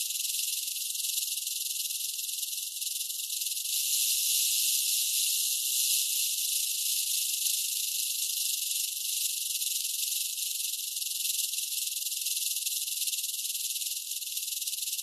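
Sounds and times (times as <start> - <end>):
rattlesnake tail rattling: 2.3 - 9.9.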